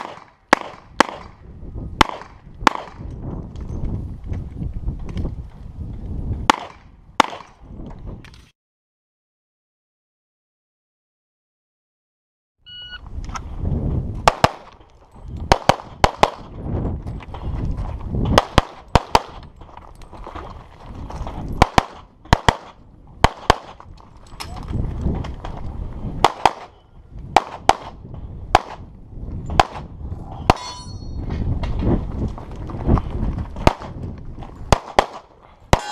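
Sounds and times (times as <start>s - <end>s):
pistol shots: 0.0s - 1.4s, 2.0s - 3.0s, 6.5s - 7.6s, 14.2s - 14.8s, 21.6s - 23.8s, 26.2s - 26.8s, 27.4s - 28.8s, 34.7s - 35.9s
short high beep: 12.7s - 13.0s
metallic clang of steel targets: 30.4s - 31.3s.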